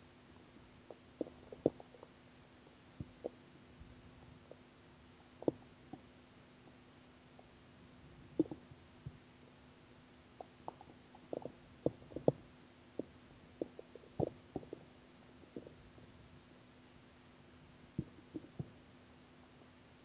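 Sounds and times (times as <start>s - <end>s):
stomach growling and gurgling: 0.8s - 3.4s, 5.3s - 6.1s, 8.2s - 9.2s, 10.4s - 16.2s, 18.0s - 18.8s.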